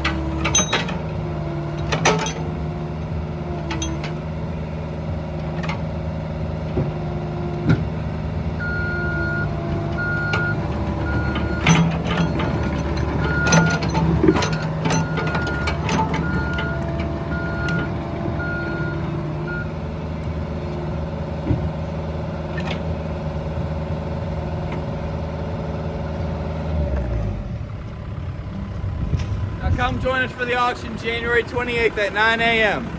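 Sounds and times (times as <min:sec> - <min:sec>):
metal clanks and knocks: 0:00.0 - 0:02.8, 0:03.6 - 0:04.3, 0:09.8 - 0:18.5, 0:28.7 - 0:30.2
diesel engine running: 0:00.0 - 0:32.9.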